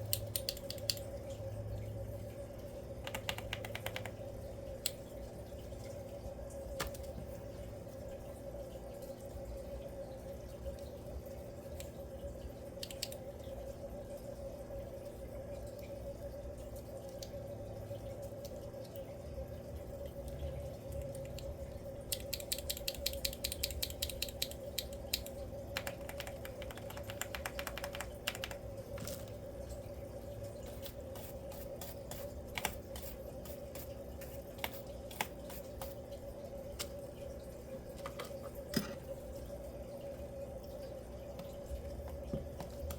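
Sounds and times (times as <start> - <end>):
keyboard keys clicking: 3.1 - 4.2, 22.2 - 29.2.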